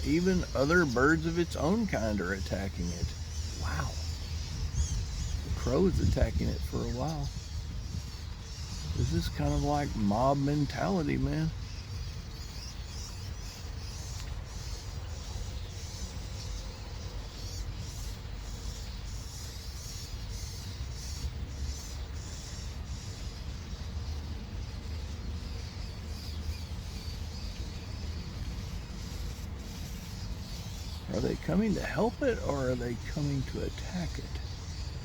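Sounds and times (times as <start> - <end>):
low outdoor rumble: 0.0 - 12.4.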